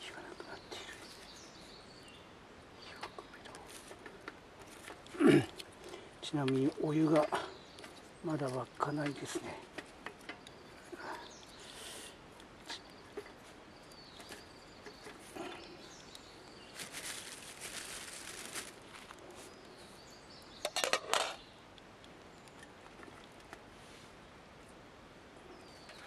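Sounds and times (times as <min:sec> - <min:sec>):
quiet outdoor background: 0:00.0 - 0:26.0
rustling: 0:12.3 - 0:20.1.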